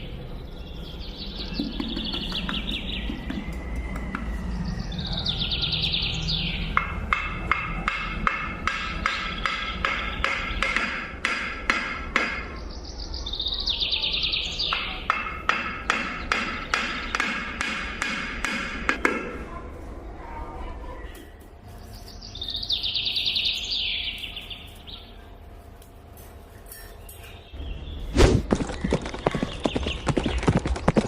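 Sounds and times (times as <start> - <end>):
birdsong chirps falling in pitch: 0.0 - 6.8, 12.5 - 15.1, 21.9 - 25.2
sharp woody taps: 1.6 - 4.3.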